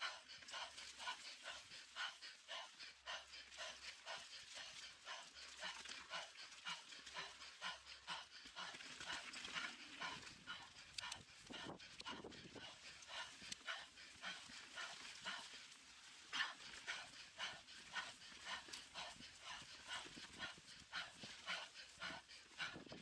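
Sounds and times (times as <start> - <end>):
person panting heavily: 0.0 - 23.0.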